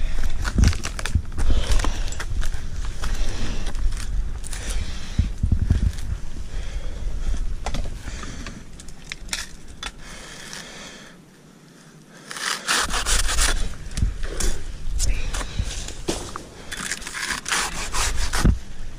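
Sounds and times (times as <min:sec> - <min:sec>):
dry palm fronds crackling: 0:00.0 - 0:06.8, 0:12.0 - 0:18.9.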